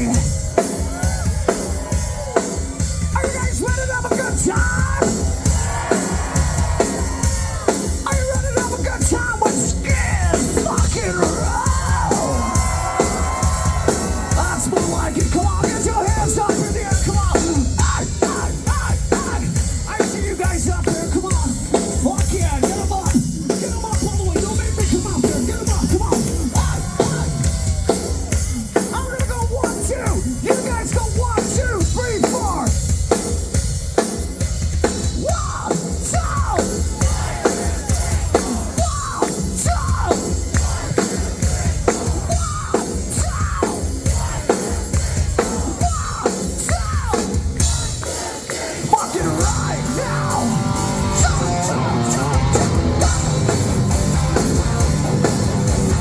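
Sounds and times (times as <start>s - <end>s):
hard rock band playing: 0.0s - 56.0s
pounding drum kit: 0.0s - 56.0s
distorted electric guitars: 48.9s - 56.0s.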